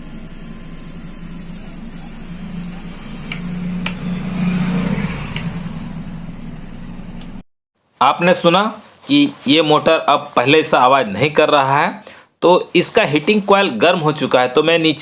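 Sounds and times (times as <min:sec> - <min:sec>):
small motor humming and whining: 0:00.0 - 0:07.4.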